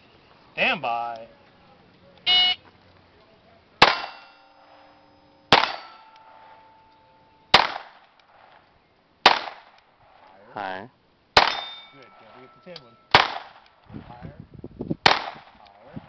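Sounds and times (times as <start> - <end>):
pistol shots: 3.8 - 4.4, 5.5 - 6.6, 7.5 - 8.5, 9.2 - 10.2, 11.4 - 11.9, 13.1 - 13.7, 15.0 - 15.7
steel target ringing: 3.8 - 7.6, 11.4 - 13.2.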